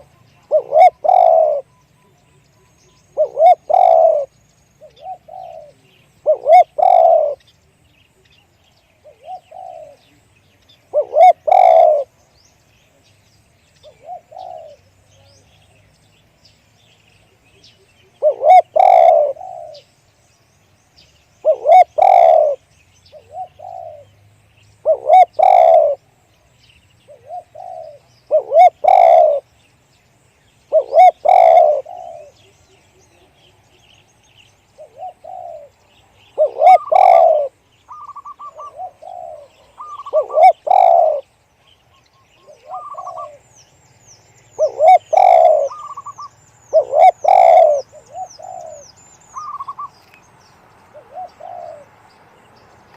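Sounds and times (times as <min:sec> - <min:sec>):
dove cooing: 0:00.0 - 0:07.4, 0:09.0 - 0:12.2, 0:13.8 - 0:15.5, 0:17.3 - 0:19.9, 0:21.4 - 0:24.1, 0:24.8 - 0:26.1, 0:27.1 - 0:29.5, 0:30.7 - 0:33.5, 0:34.8 - 0:35.8, 0:36.4 - 0:41.3, 0:42.4 - 0:43.4, 0:44.6 - 0:50.1, 0:50.9 - 0:51.9
high bird chirps: 0:41.8 - 0:50.3.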